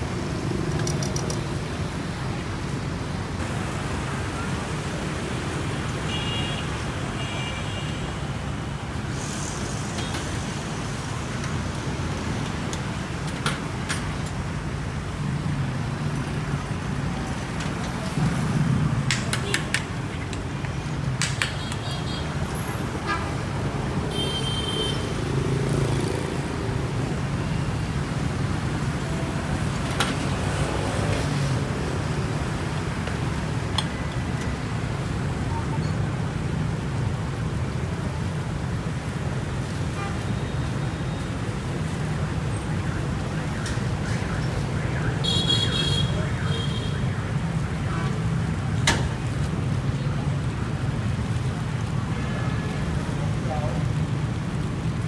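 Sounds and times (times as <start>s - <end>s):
street traffic passing: 0.0s - 55.0s
sharp clicks: 0.7s - 1.5s
car horn toots: 24.1s - 25.2s, 45.2s - 47.1s.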